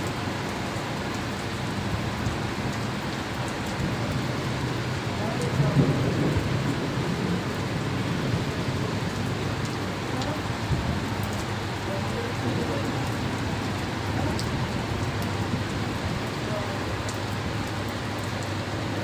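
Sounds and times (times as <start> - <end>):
steady rain hiss: 0.0 - 19.0.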